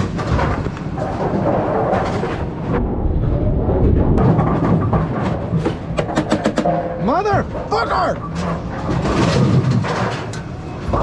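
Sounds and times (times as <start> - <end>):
machinery rumble: 0.0 - 11.0
scattered knocks: 4.2 - 11.0.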